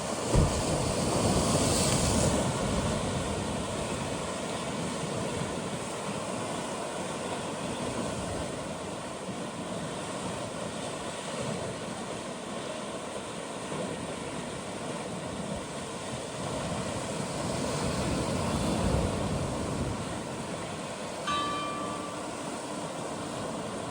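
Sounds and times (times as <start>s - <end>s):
surf washing among rocks: 0.0s - 8.7s.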